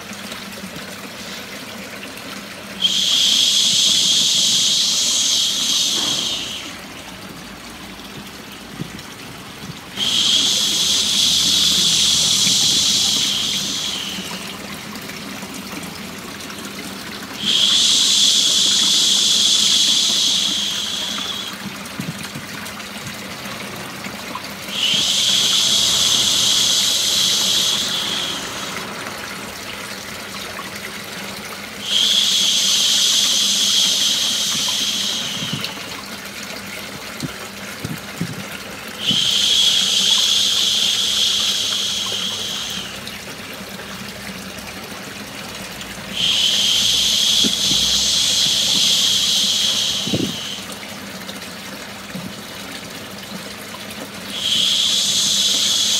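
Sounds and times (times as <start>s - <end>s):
running water: 0.0s - 55.9s
person shushing: 2.8s - 6.8s, 10.0s - 14.5s, 46.1s - 50.7s.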